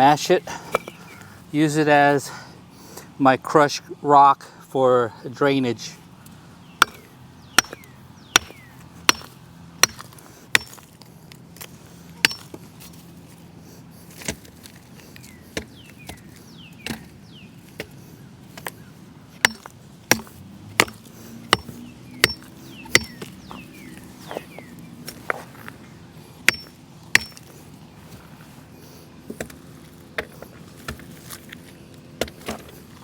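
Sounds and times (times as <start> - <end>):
rocks being smashed: 8.4 - 10.8.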